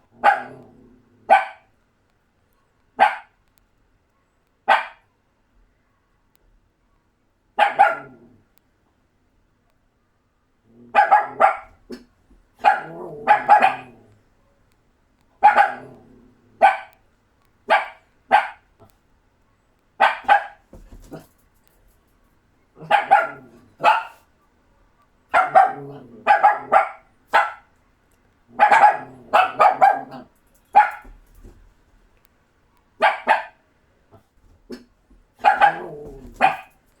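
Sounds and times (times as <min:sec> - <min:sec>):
puppies barking: 0:15.4 - 0:15.9, 0:22.8 - 0:24.2, 0:25.4 - 0:27.6, 0:28.6 - 0:30.2, 0:35.4 - 0:36.8.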